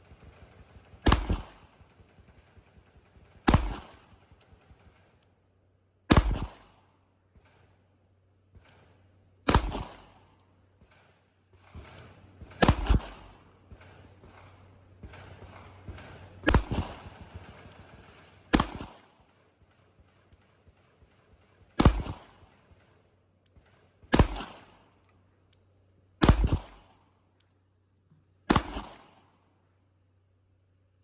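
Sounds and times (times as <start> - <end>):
gunshots with short echo: 0.0 - 2.7, 3.4 - 4.9, 6.1 - 6.9, 8.6 - 22.9, 24.0 - 25.0, 26.2 - 27.0, 28.5 - 29.4.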